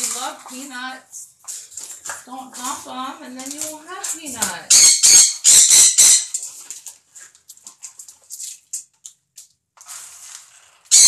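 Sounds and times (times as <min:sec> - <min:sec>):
parrots squawking: 0:04.0 - 0:06.6.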